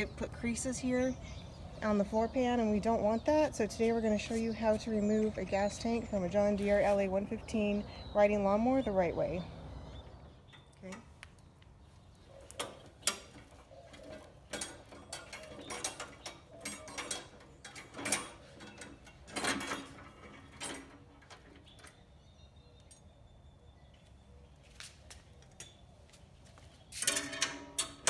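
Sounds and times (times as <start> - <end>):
hand tools clinking on metal: 12.5 - 22.0, 27.0 - 28.0.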